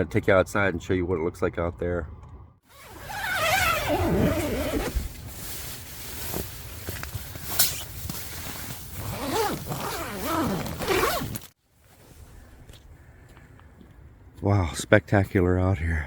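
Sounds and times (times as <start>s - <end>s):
tent zipper being pulled: 2.7s - 11.6s.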